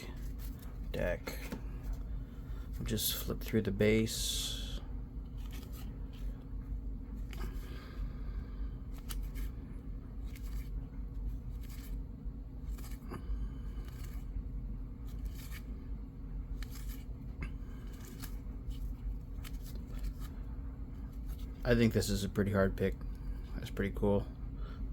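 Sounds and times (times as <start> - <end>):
clothes dryer humming: 0.0 - 8.9
cards flipped papery slide: 15.1 - 15.6, 16.6 - 17.1.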